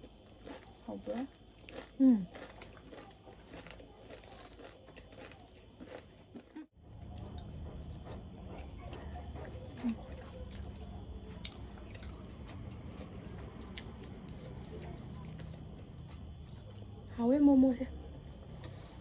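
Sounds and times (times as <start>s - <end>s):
chewing and crunching food: 0.0s - 17.2s, 17.8s - 19.0s.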